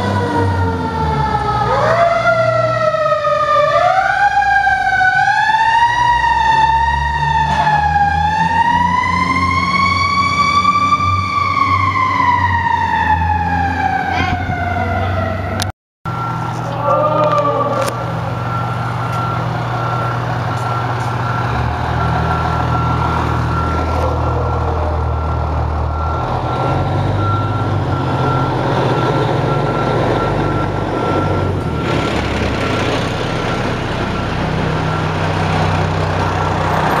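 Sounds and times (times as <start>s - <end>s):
diesel engine running: 14.0s - 37.0s.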